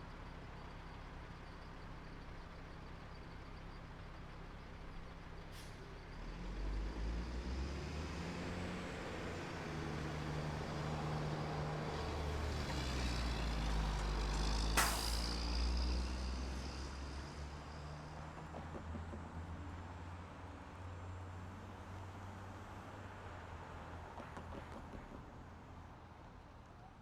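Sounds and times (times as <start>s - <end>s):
vehicle engine rumble passing: 5.8s - 27.0s.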